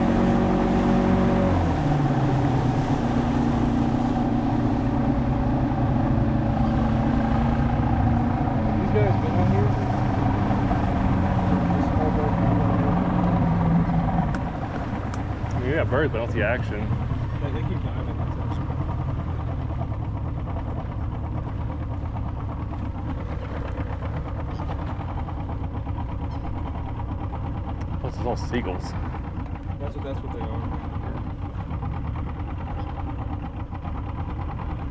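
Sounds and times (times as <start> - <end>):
boat motor running: 0.0 - 34.9.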